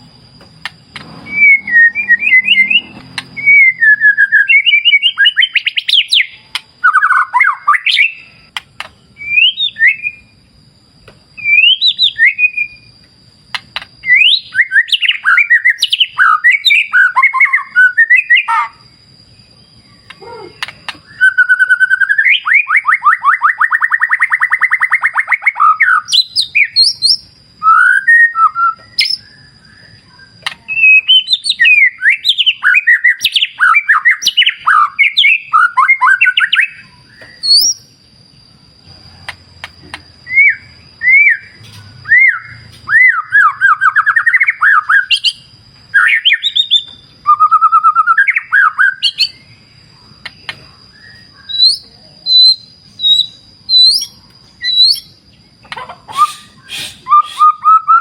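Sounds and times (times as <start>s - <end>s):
bird singing whistles and trills: 0.0s - 10.6s, 11.3s - 58.0s.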